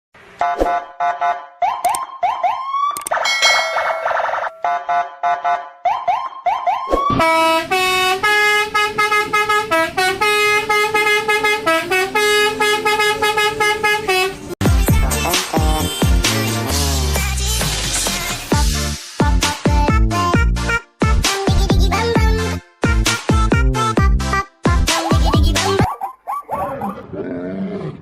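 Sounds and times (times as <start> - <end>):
horn-like tones: 7.1 - 14.4.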